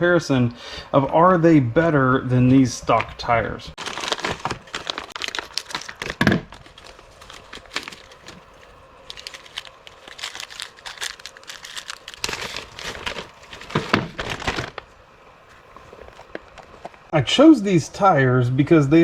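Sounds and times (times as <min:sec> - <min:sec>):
packaging crinkling and rustling: 0:02.9 - 0:14.9, 0:15.5 - 0:17.1.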